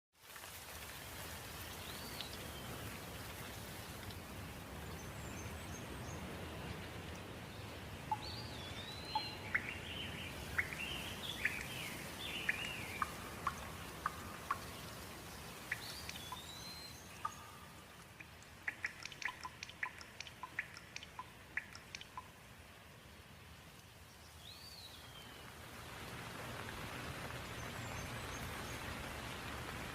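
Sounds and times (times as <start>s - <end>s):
steady rain: 0.2s - 29.9s
sharp ticking drips: 0.5s - 25.3s
birds calling and chirping: 8.1s - 22.3s.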